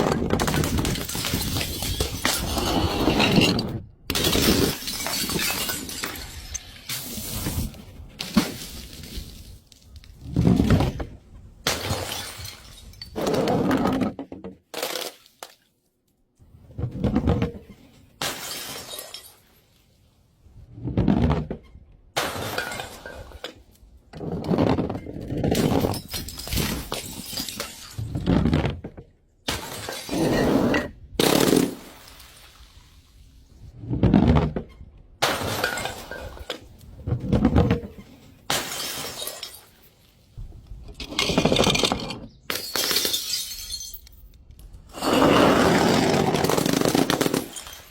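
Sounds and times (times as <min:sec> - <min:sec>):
glass bottles shattering: 0:00.4 - 0:07.3, 0:11.7 - 0:13.2, 0:18.2 - 0:19.6, 0:22.2 - 0:23.5, 0:25.5 - 0:28.2, 0:29.5 - 0:31.8, 0:35.2 - 0:36.6, 0:38.5 - 0:40.0, 0:41.1 - 0:44.4, 0:45.9 - 0:47.9.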